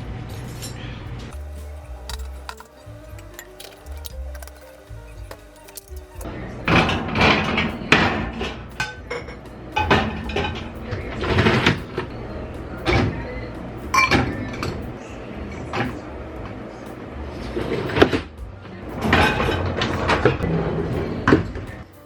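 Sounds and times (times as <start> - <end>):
objects knocking and clinking: 1.3 - 6.3.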